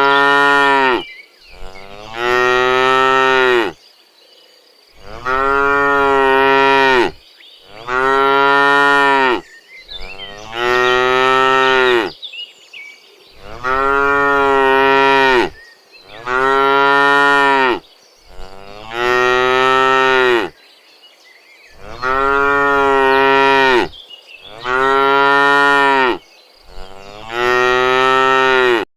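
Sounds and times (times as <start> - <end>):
cows mooing: 0.0 - 3.8, 5.0 - 9.4, 10.0 - 12.1, 13.4 - 20.5, 21.8 - 23.9, 24.5 - 28.9.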